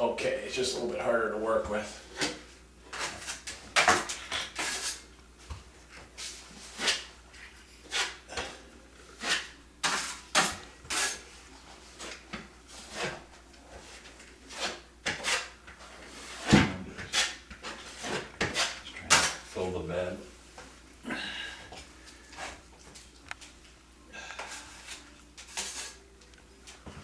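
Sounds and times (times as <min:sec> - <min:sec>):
drywall knife scraping compound: 0:02.2 - 0:05.0, 0:06.6 - 0:07.1, 0:07.8 - 0:11.3, 0:11.9 - 0:13.2, 0:13.8 - 0:19.6, 0:24.4 - 0:26.0.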